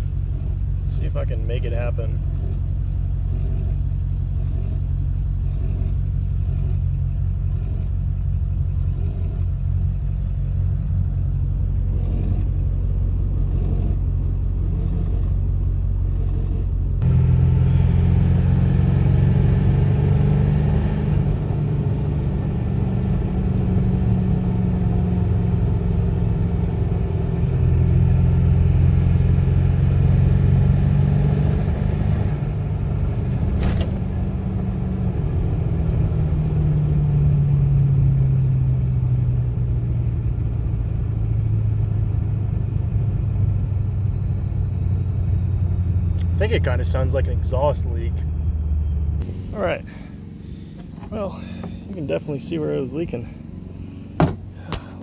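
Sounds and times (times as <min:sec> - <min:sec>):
diesel truck engine running: 0:00.0 - 0:55.0.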